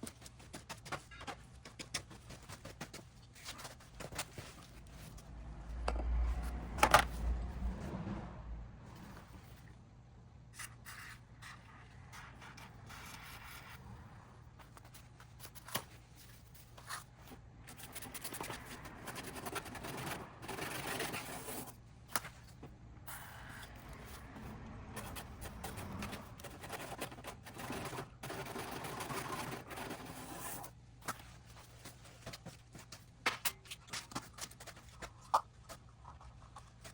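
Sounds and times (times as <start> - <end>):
parts scraping and rubbing: 10.6 - 33.0.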